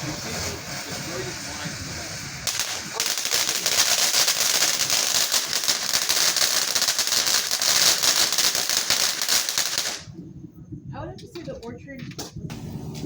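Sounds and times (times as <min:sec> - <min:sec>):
firework crackling: 0:00.0 - 0:10.2.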